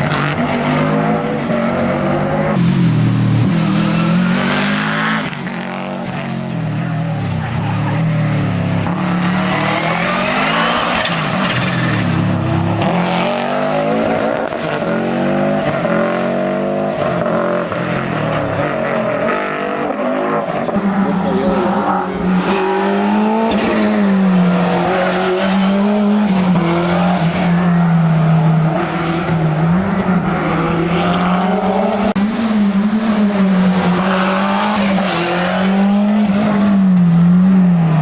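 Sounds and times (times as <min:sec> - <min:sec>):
rally car engine revving hard: 0:00.0 - 0:38.0.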